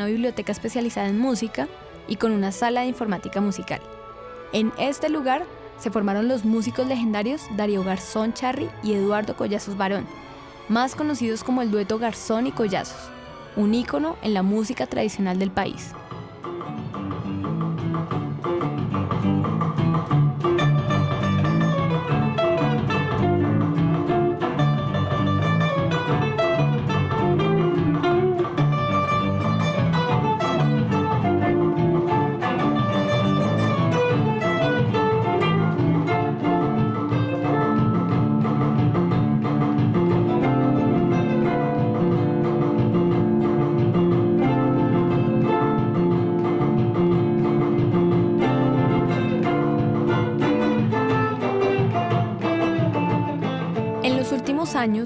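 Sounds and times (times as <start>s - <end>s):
plucked string melody: 0.0s - 55.0s
bass notes: 16.3s - 55.0s.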